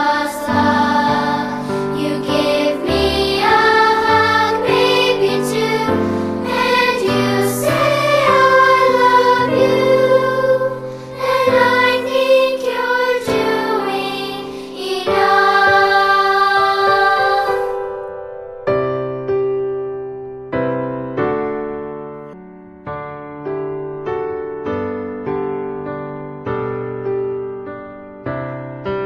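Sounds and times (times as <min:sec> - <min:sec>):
choir singing with music: 0:00.0 - 0:18.5.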